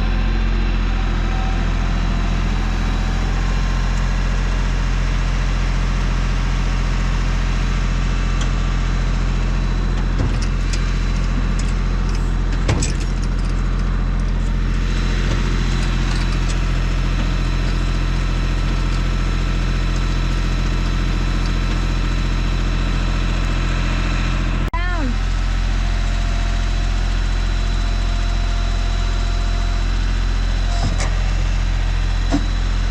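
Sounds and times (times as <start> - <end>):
engine idling: 0.0 - 32.9.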